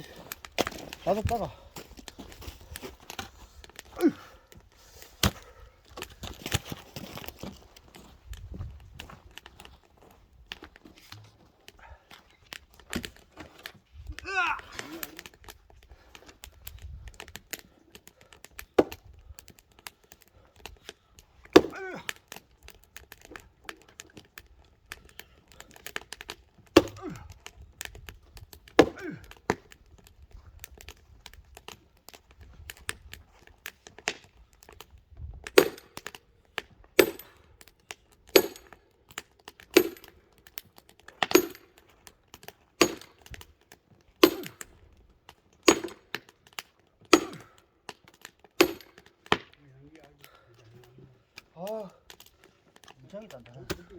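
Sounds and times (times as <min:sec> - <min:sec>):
axe chopping a log: 0:05.1 - 0:05.5, 0:18.8 - 0:19.0, 0:21.5 - 0:22.2, 0:26.7 - 0:27.2, 0:28.7 - 0:29.7, 0:42.8 - 0:43.2, 0:44.2 - 0:44.7, 0:45.7 - 0:46.3, 0:47.1 - 0:47.6, 0:48.6 - 0:49.5.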